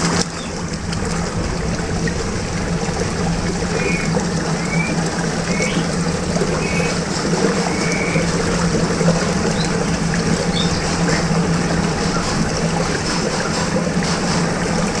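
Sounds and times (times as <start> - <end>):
steady low hum: 0.0 - 15.0
water swirling in whirlpool: 0.0 - 15.0.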